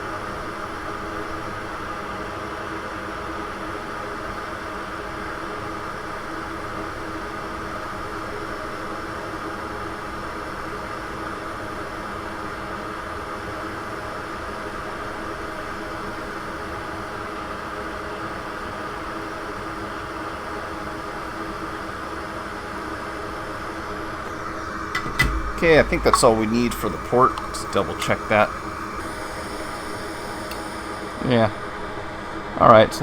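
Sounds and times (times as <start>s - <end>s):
fan whirring: 24.2s - 33.0s.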